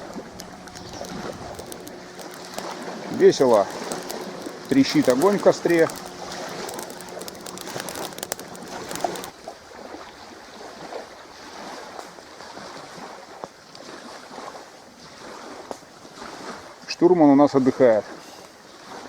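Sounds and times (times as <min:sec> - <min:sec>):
campfire crackling and popping: 0:00.0 - 0:09.4.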